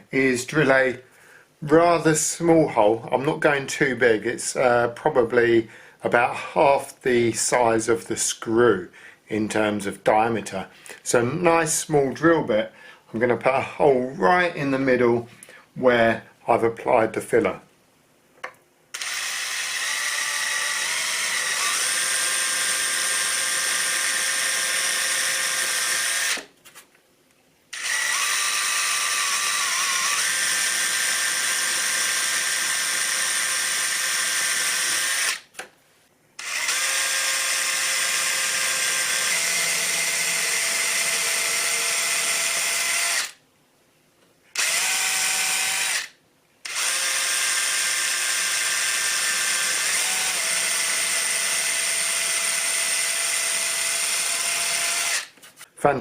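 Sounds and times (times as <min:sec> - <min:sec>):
power drill boring holes: 0:18.9 - 0:26.5, 0:27.7 - 0:35.6, 0:36.4 - 0:43.4, 0:44.6 - 0:55.4.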